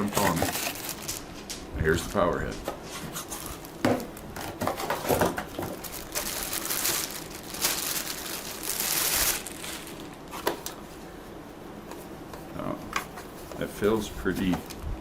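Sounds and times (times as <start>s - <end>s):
plastic packaging crinkling: 0.0s - 2.5s, 3.1s - 10.8s.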